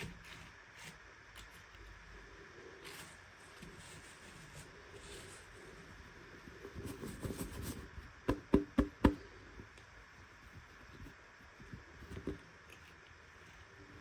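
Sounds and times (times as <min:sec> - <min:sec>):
soft rustling: 0:02.8 - 0:08.0.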